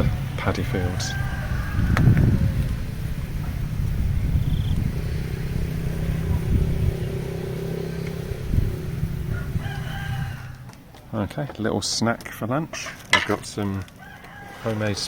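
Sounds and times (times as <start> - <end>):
steady low rumble: 0.0 - 10.7
rooster crowing: 0.5 - 3.9, 5.3 - 10.7, 13.9 - 15.0.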